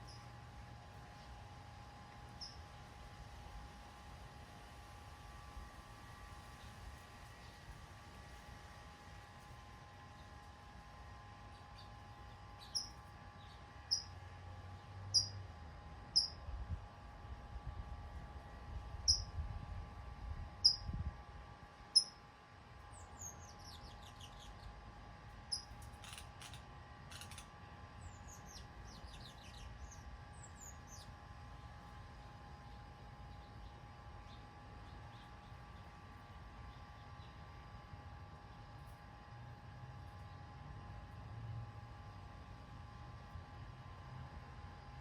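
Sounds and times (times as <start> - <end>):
songbird sharp chirp: 11.5 - 14.1, 15.1 - 15.4
birds twittering: 11.5 - 14.2, 14.8 - 15.4, 22.9 - 24.8, 25.5 - 37.4.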